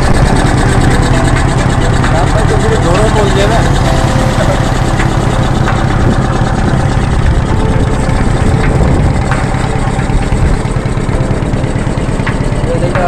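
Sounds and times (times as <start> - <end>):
road noise: 0.0 - 13.0
vehicle engine humming: 0.0 - 13.0.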